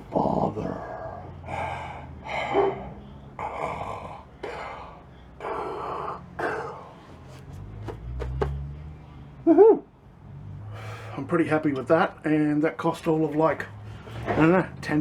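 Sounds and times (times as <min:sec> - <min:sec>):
man breathing heavily: 0:00.8 - 0:07.3, 0:10.7 - 0:11.2.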